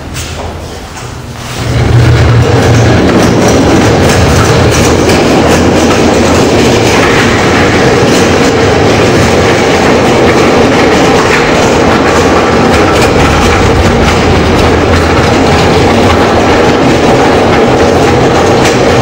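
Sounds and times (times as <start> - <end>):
pallet truck wheels rumbling: 0.0 - 19.0.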